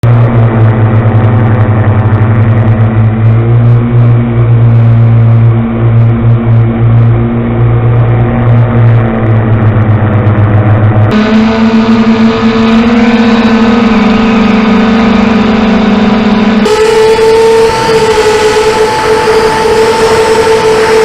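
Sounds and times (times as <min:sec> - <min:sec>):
bad bearings noise: 0:00.0 - 0:21.0
engine running steadily: 0:00.0 - 0:21.0.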